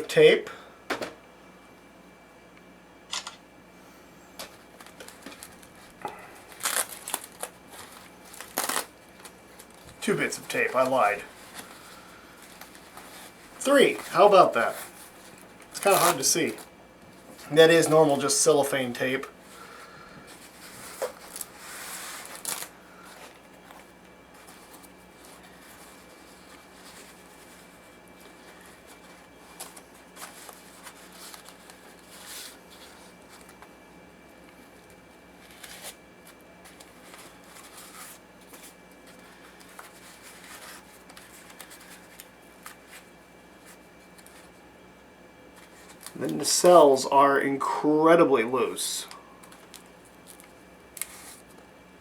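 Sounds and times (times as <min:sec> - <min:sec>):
packaging tape rustling: 0:04.4 - 0:33.8, 0:34.4 - 0:44.6, 0:45.5 - 0:46.9, 0:49.0 - 0:51.7
tape ripping off: 0:06.5 - 0:08.9.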